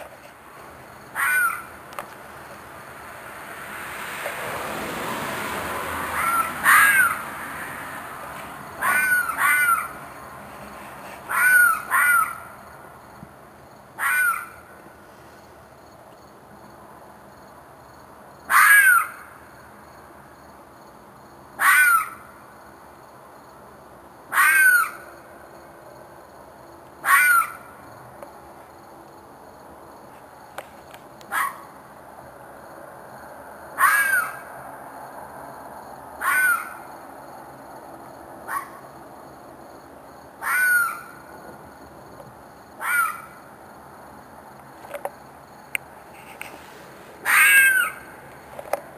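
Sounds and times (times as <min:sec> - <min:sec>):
fox giving harsh calls: 0:01.1 - 0:01.7, 0:06.1 - 0:07.8, 0:08.8 - 0:10.1, 0:11.3 - 0:12.6, 0:14.0 - 0:14.7, 0:18.5 - 0:19.3, 0:21.6 - 0:22.2, 0:24.3 - 0:25.1, 0:27.0 - 0:27.7, 0:31.3 - 0:31.7, 0:33.8 - 0:34.5, 0:36.2 - 0:36.8, 0:38.5 - 0:38.8, 0:40.4 - 0:41.2, 0:42.8 - 0:43.4, 0:47.2 - 0:48.2
rasping animal screeches: 0:47.2 - 0:48.0.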